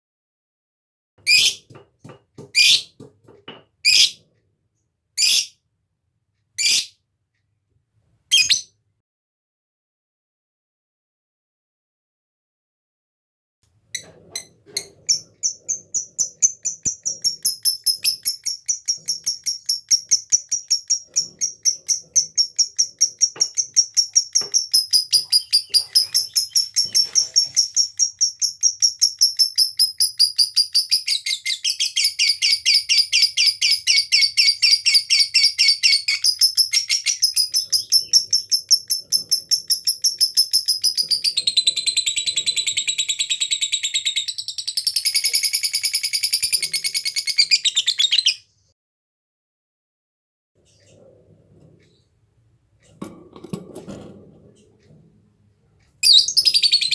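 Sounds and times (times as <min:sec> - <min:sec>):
lovebird chattering call: 0:01.3 - 0:01.6, 0:05.2 - 0:05.5, 0:06.6 - 0:06.9, 0:08.3 - 0:08.7.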